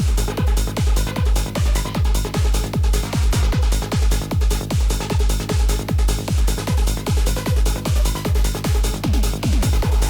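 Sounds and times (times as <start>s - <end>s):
deep kick drum: 0.0s - 10.0s
hard techno music: 0.0s - 10.0s
sustained low bass: 0.0s - 10.0s.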